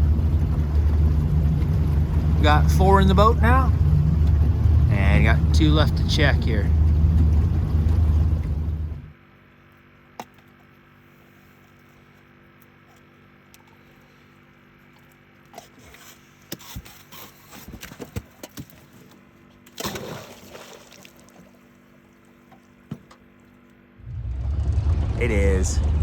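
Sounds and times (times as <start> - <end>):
water splashing and trickling: 0.0 - 9.2, 18.2 - 23.6
faint steady hum: 0.0 - 24.4
loud splash: 19.8 - 21.6.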